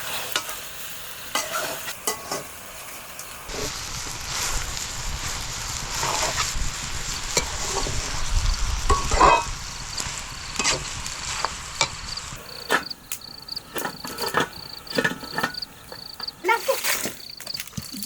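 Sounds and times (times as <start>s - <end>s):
food sizzling in a pan: 0.0s - 18.0s
high pulsing insect chirp: 6.6s - 10.6s, 11.6s - 18.0s
stirring clatter: 12.4s - 18.0s
sharp clicks: 13.0s - 13.5s.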